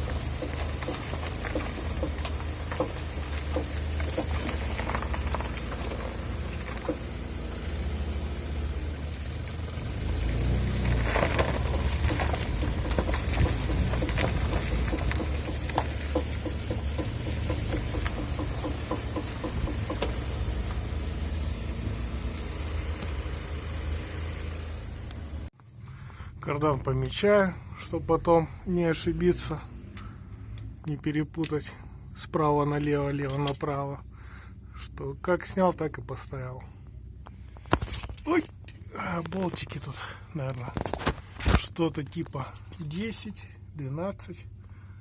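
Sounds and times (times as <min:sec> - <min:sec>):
knocks from underneath car: 0:00.0 - 0:07.3, 0:10.9 - 0:21.0
car engine rumbling: 0:00.0 - 0:45.0.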